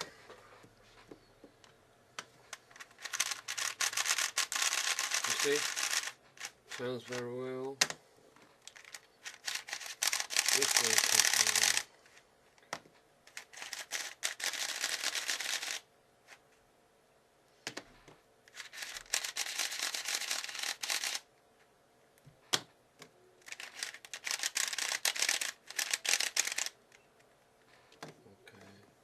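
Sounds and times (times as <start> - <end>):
puzzle cube clacking: 2.7 - 7.2, 8.6 - 11.9, 12.6 - 15.8, 18.5 - 21.2, 23.4 - 27.0.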